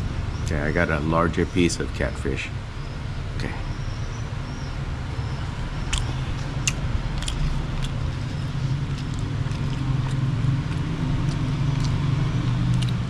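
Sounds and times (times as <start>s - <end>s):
low motor hum: 0.0s - 13.0s
mouth clicks: 5.8s - 13.0s
person chewing: 5.9s - 13.0s.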